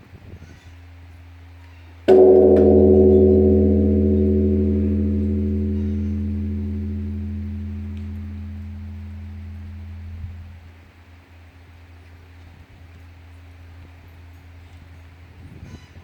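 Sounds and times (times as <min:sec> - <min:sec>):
temple bell ringing: 0:02.1 - 0:10.5
deep bell hum: 0:02.1 - 0:10.6.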